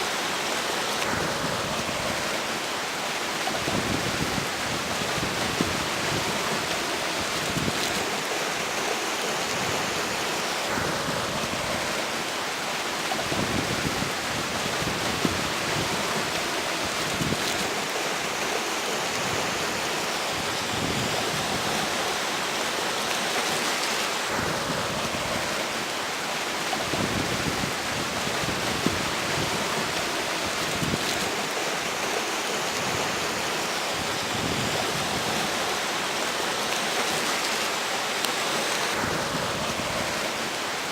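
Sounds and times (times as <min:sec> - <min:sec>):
gusting wind: 0:00.0 - 0:40.9
river water rushing: 0:00.0 - 0:40.9
wind buffeting microphone: 0:03.6 - 0:08.1, 0:13.2 - 0:17.8, 0:26.8 - 0:31.4.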